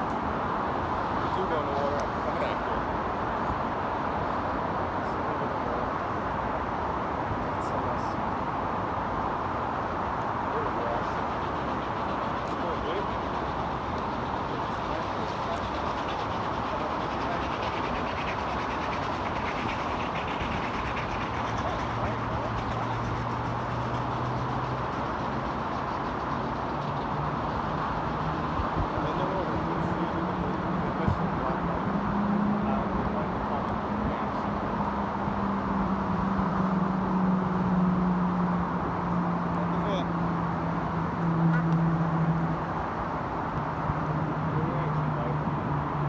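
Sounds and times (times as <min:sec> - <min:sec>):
vehicles passing: 0:00.0 - 0:46.0
constant low hum: 0:05.0 - 0:31.9.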